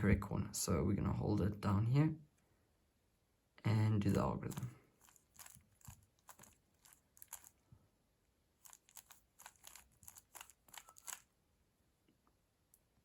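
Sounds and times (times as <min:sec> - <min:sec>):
puzzle cube turning clicks: 0:04.5 - 0:07.6, 0:08.6 - 0:11.3.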